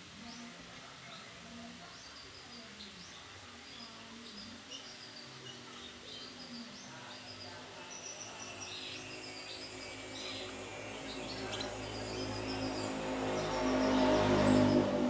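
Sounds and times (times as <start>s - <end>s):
background noise: 0.0s - 15.0s
canary chirping: 1.2s - 14.9s.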